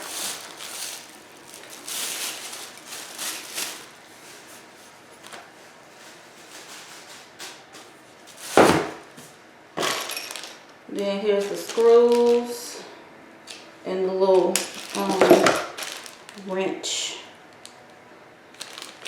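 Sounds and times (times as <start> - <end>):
packaging rustling: 0.0 - 9.2, 9.8 - 10.7, 11.4 - 12.5, 14.5 - 16.5, 18.5 - 19.0.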